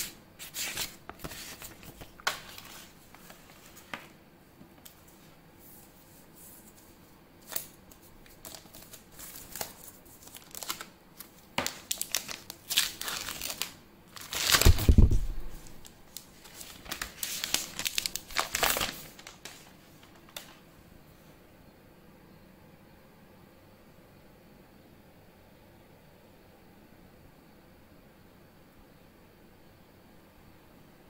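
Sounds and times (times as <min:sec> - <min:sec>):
packaging crinkling and tearing: 0:07.4 - 0:20.6.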